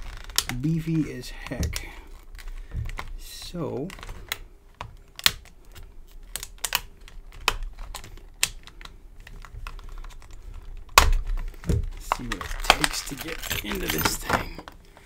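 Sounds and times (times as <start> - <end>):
padlock and metal tools clicking: 12.3 - 14.7.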